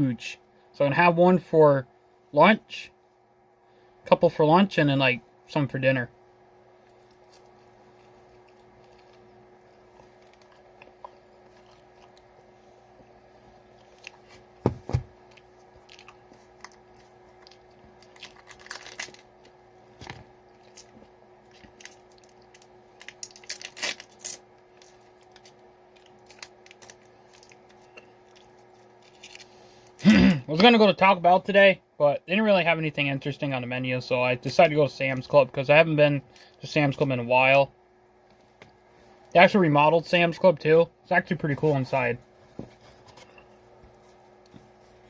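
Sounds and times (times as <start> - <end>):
faint steady hum: 0.0 - 45.0
packaging crinkling and tearing: 15.2 - 30.0.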